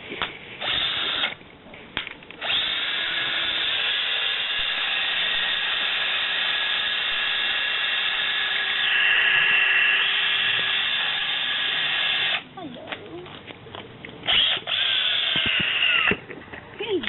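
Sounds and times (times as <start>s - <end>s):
power tool whining: 0.6s - 1.4s, 2.4s - 12.4s, 14.3s - 16.2s.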